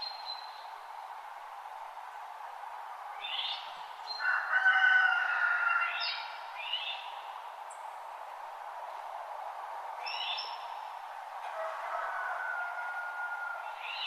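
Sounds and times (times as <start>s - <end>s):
steady background hiss: 0.0s - 11.6s.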